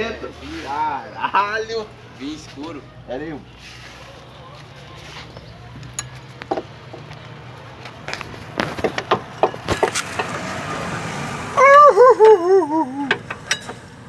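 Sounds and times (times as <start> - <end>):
sharp clicks and knocks: 5.8 - 10.4.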